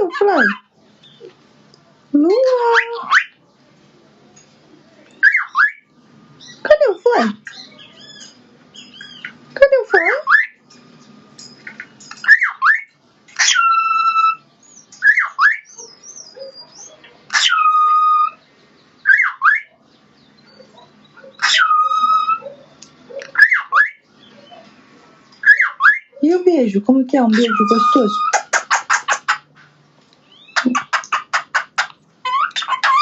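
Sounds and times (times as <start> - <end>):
cockatiel chirping: 30.3 - 33.0.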